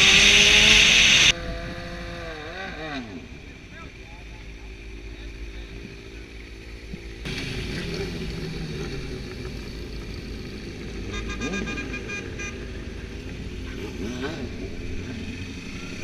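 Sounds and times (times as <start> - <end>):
engine and traffic noise: 0.0 - 16.0
vehicle horn beeping: 11.0 - 12.7.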